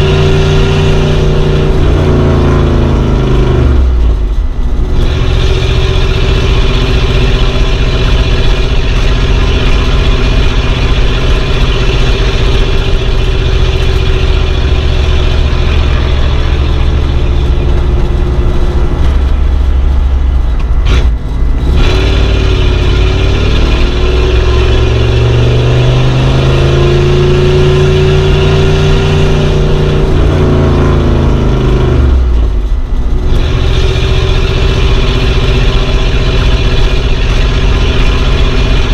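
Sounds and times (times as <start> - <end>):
old car engine running: 0.0 - 38.9.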